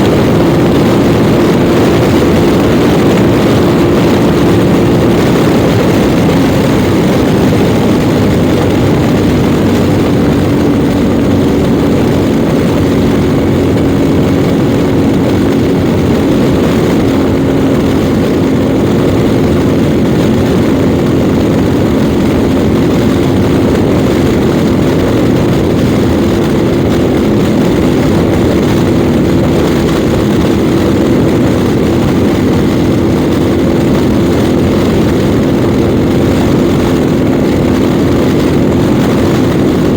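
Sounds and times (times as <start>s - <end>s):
motorcycle engine cruising: 0.0s - 39.9s
riding wind rush: 0.0s - 39.9s.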